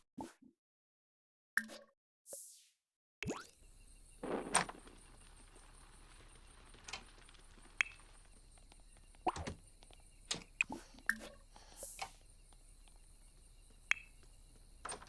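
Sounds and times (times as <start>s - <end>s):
small objects rustling: 3.6s - 15.0s.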